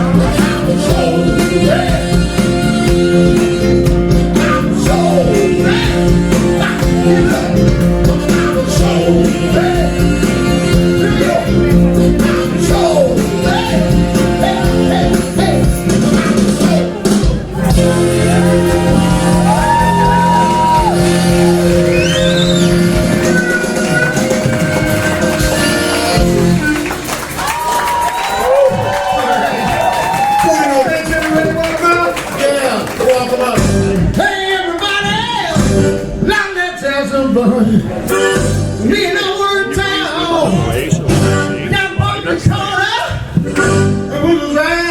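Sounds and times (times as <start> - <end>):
man singing: 0.0 - 24.7, 30.8 - 44.9
live band playing soul-rock: 0.0 - 27.4, 37.8 - 39.0, 40.5 - 42.5, 43.2 - 44.3
guitar: 0.0 - 27.6, 32.2 - 44.9
steady drum beat: 0.0 - 32.1
drum hits: 14.7 - 27.4.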